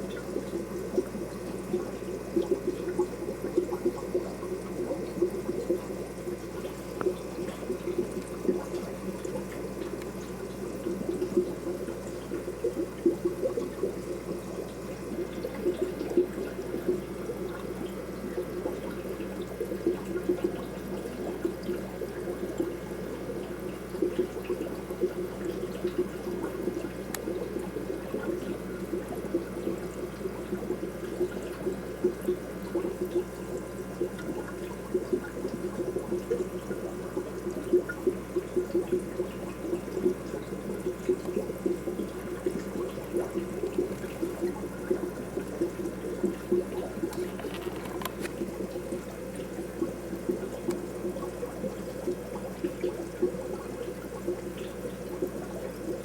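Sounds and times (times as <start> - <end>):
aquarium water bubbling: 0.0 - 56.0
faint steady hum: 0.0 - 56.0
small splashy pops: 23.9 - 27.5, 39.7 - 48.8, 50.2 - 56.0.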